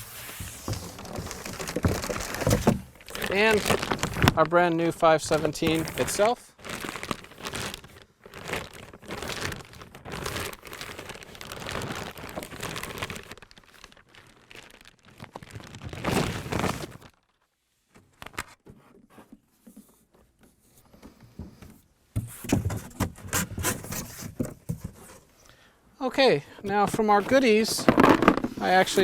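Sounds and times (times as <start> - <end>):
plastic packaging crinkling: 0.0 - 17.4, 27.0 - 29.0.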